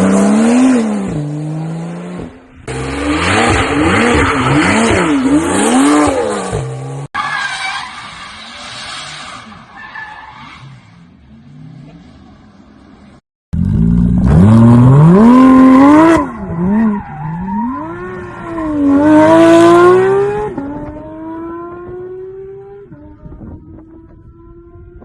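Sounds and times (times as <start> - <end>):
car engine revving: 13.6 - 25.0.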